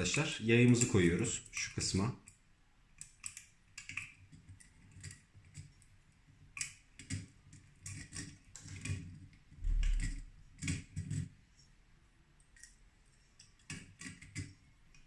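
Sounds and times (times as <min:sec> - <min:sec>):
plastic parts clicking and tapping: 0:03.0 - 0:11.3, 0:13.4 - 0:15.0.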